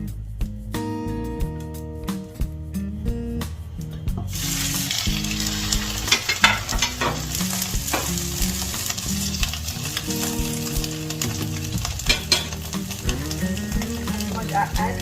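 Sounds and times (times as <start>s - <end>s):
background music: 0.0s - 15.0s
fish sizzling in butter: 4.3s - 15.0s.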